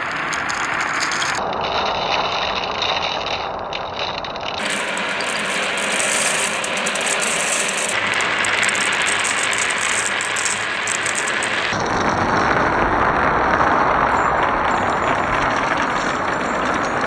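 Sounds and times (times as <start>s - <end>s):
marbles rolling and clattering: 4.6s - 11.8s.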